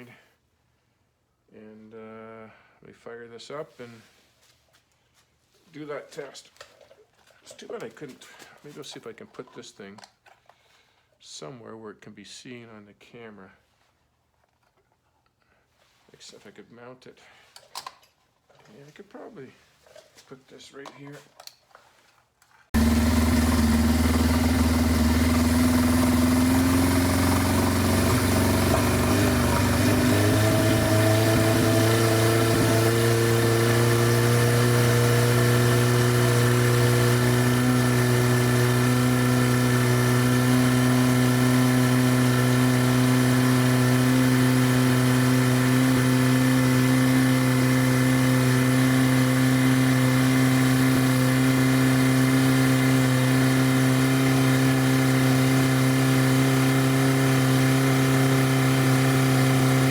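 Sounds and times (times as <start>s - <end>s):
motorcycle engine revving: 22.8s - 59.9s.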